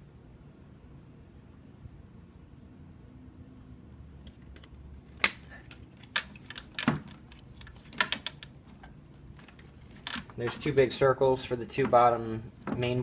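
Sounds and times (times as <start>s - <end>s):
plastic parts clicking and knocking: 4.3s - 10.7s.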